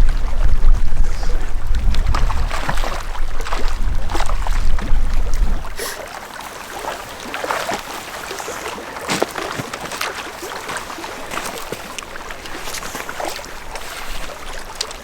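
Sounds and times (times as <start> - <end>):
wind buffeting microphone: 0.0 - 5.9
lake water splashing and lapping: 0.0 - 15.0.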